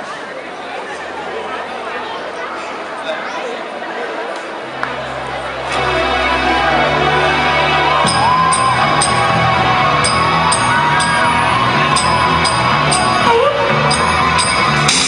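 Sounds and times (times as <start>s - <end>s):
bass notes: 4.8s - 15.0s
gliding melody line: 5.3s - 14.9s
drums: 8.0s - 15.0s.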